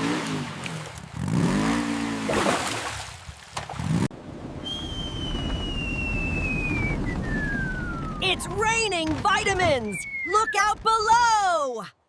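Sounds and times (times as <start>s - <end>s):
low rumble: 4.2s - 11.1s
falling whistle: 4.6s - 8.3s, 10.0s - 10.6s.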